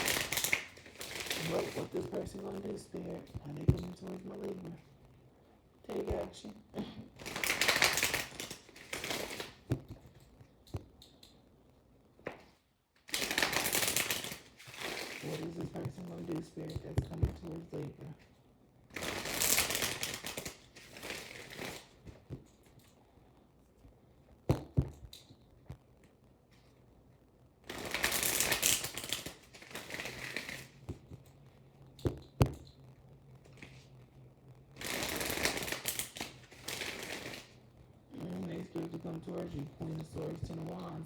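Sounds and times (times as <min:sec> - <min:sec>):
cards being shuffled: 0:00.0 - 0:04.8, 0:07.1 - 0:11.2, 0:12.2 - 0:18.0, 0:19.0 - 0:23.0, 0:27.7 - 0:31.4, 0:34.8 - 0:37.6.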